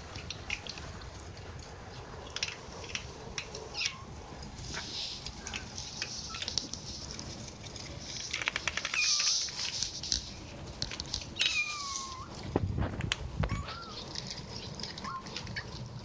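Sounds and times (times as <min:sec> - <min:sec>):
small clicks and rustling: 0:00.0 - 0:16.0
kittens mewing: 0:03.6 - 0:06.8, 0:08.6 - 0:10.0, 0:11.2 - 0:12.6, 0:13.4 - 0:15.8.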